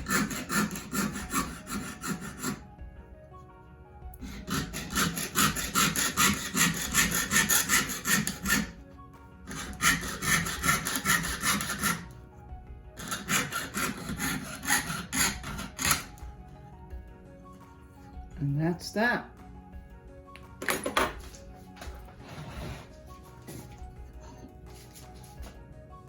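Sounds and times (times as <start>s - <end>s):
saw cutting metal sheet: 0.0s - 2.6s, 4.2s - 8.8s, 9.5s - 12.1s, 13.0s - 16.2s.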